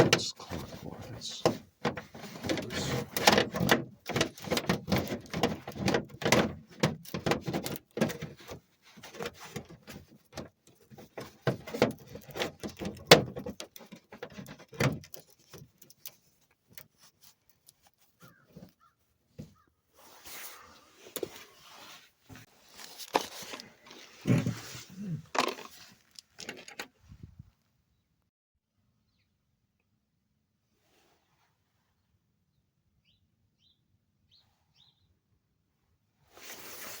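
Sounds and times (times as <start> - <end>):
clicks and rattles on plastic: 0.0 - 16.9, 25.3 - 26.9.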